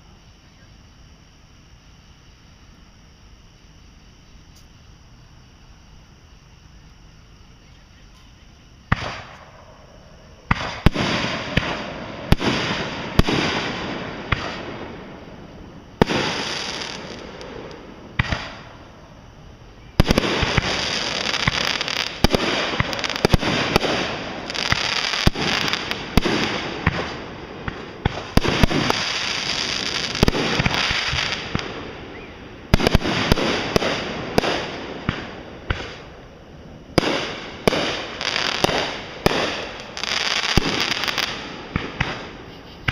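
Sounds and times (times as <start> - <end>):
fireworks bangs: 8.8 - 19.1, 19.8 - 42.9
fireworks crackling: 8.8 - 42.9.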